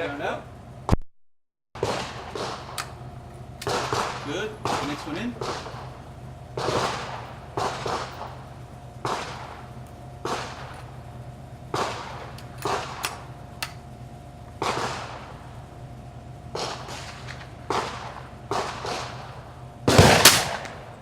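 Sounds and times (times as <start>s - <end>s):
steady background hum: 0.0s - 1.0s, 1.8s - 21.0s
gunshots echoing: 1.8s - 3.0s, 3.6s - 11.0s, 11.7s - 13.3s, 14.6s - 15.6s, 16.5s - 21.0s.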